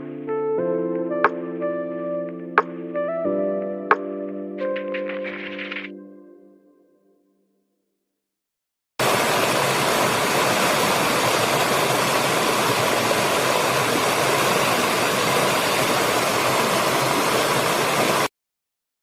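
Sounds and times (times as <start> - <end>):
waterfall rushing: 9.0 - 18.3.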